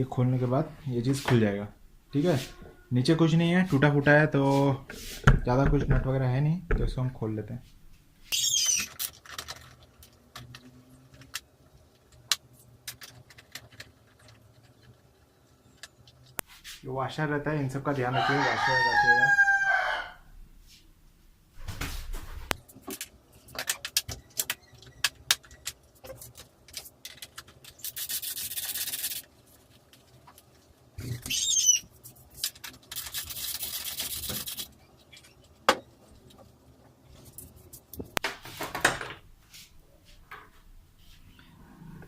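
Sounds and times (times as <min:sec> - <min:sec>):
tools and plastic parts clicking: 0:08.7 - 0:15.0, 0:22.8 - 0:29.3.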